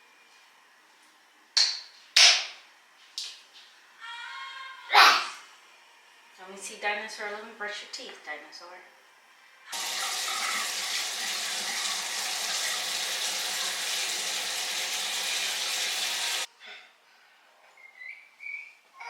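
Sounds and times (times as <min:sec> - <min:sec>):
sink tap running: 0:09.7 - 0:16.5.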